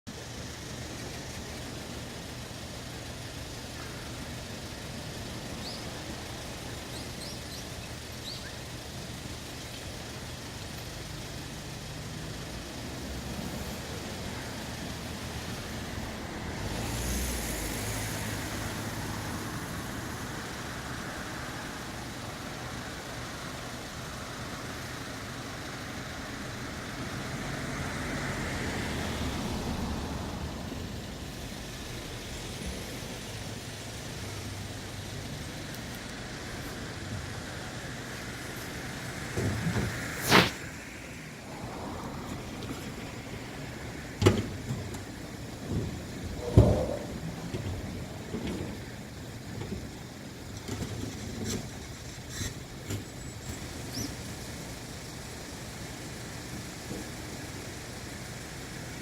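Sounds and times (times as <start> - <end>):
outdoor rushing noise: 11.4 - 52.5.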